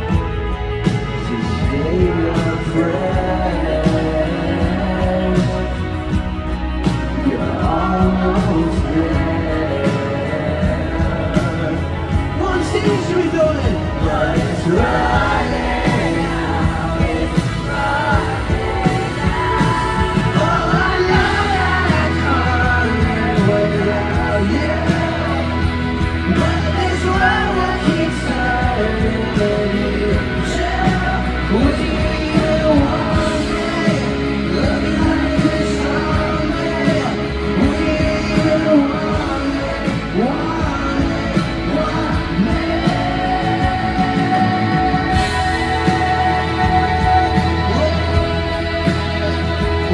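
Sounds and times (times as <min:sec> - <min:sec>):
live rock band playing: 0:00.0 - 0:49.9
person singing: 0:00.0 - 0:49.9.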